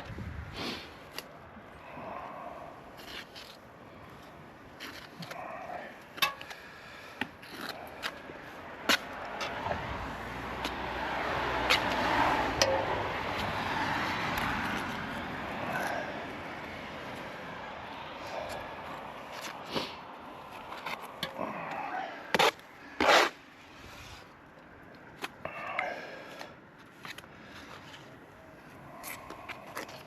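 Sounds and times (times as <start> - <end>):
road vehicle passing: 6.6 - 26.5.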